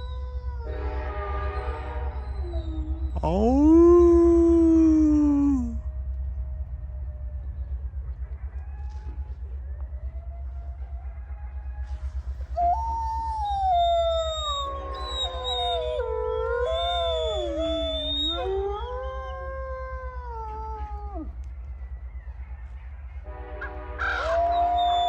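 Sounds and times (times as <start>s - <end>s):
steady low rumble: 0.0s - 24.9s
wolves howling: 0.0s - 25.0s.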